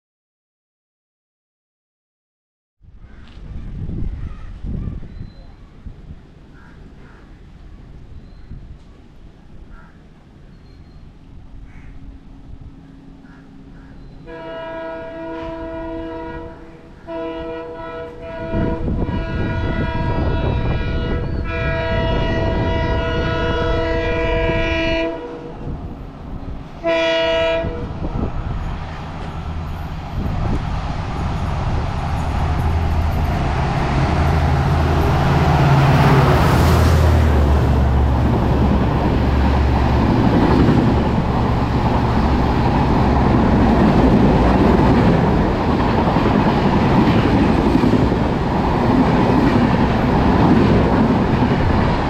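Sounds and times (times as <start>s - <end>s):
locomotive horn blasts: 14.2s - 25.8s, 26.8s - 28.1s
diesel engine drone: 28.4s - 46.7s.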